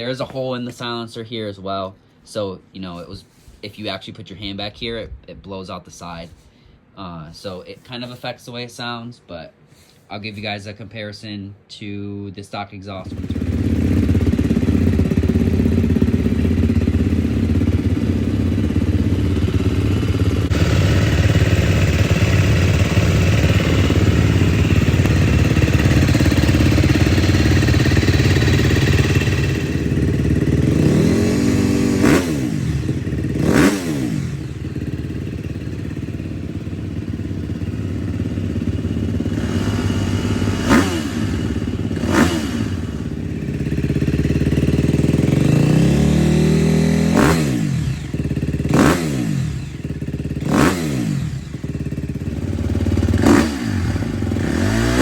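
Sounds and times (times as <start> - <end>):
dirt bike engine idling and revving: 13.0 - 55.0.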